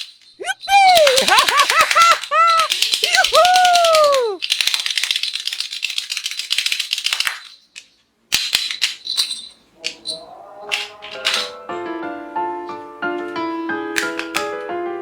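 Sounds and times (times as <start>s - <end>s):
plastic toy rattling: 0.0s - 11.7s.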